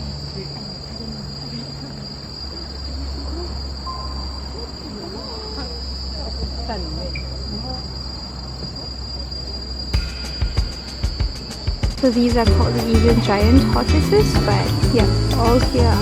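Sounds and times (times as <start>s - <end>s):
faint distant voices: 0.0s - 9.9s
insects droning: 0.0s - 16.0s.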